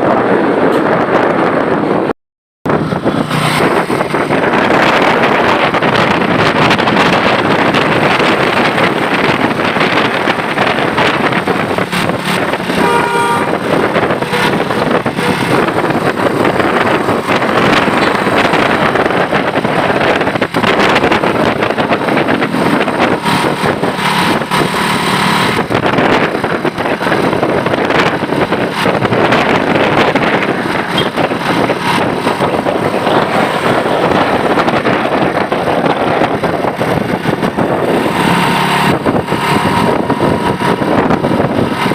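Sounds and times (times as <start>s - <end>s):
road traffic passing close: 0.0s - 2.1s, 2.7s - 41.9s
multi-tone bus horn: 12.7s - 16.7s.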